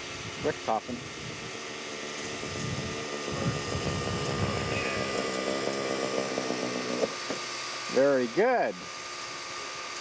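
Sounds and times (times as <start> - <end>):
model airplane engine running: 0.0 - 10.0.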